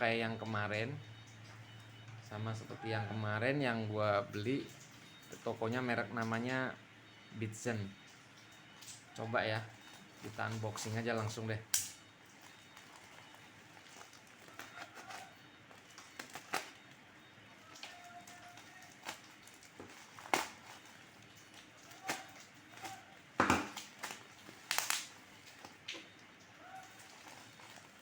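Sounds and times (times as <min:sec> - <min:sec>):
packaging crinkling: 0:12.3 - 0:28.0
package tearing and clicking: 0:12.8 - 0:16.8, 0:17.7 - 0:26.1, 0:26.8 - 0:28.0.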